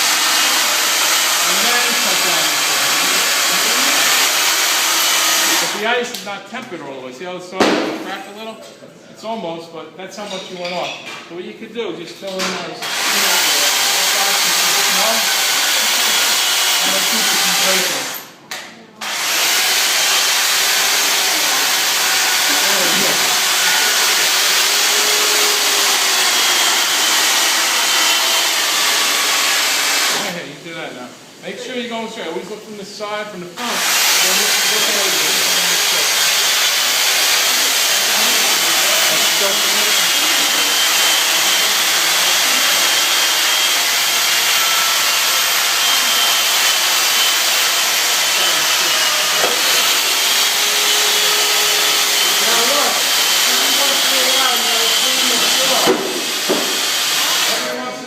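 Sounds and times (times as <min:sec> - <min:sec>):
chainsaw cutting ice: 0:00.0 - 0:05.9, 0:12.8 - 0:18.4, 0:19.0 - 0:30.4, 0:33.6 - 0:58.0.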